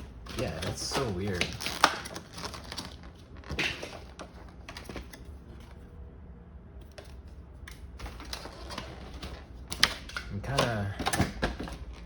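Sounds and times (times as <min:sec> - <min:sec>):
cardboard and foil packs handled: 0:00.0 - 0:05.9
foil rustling: 0:00.0 - 0:05.9.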